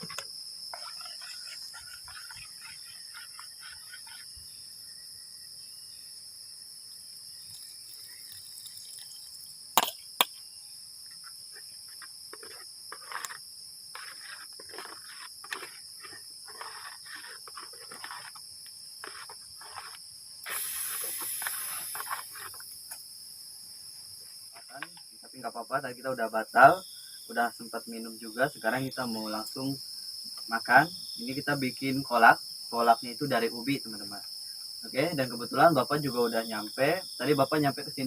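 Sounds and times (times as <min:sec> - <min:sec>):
crickets chirring: 0:00.0 - 0:38.0
brief hiss: 0:20.4 - 0:22.5.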